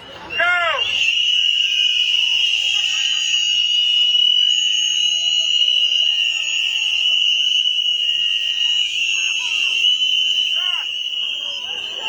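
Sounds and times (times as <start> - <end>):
crowd blowing whistles: 0.0 - 12.0.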